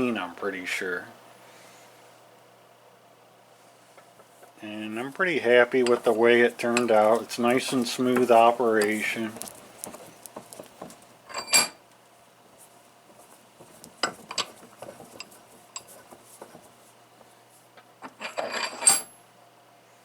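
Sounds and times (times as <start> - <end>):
vise handle clanking: 5.8 - 9.0.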